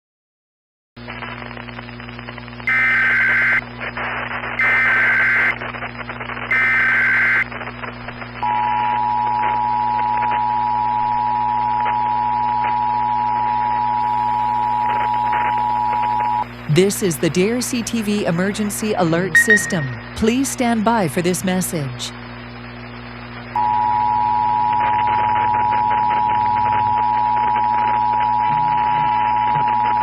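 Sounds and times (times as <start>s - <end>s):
low hum and hiss: 1.0s - 30.0s
two-tone attention signal: 2.7s - 3.6s, 4.6s - 5.5s, 6.5s - 7.4s, 19.3s - 20.2s.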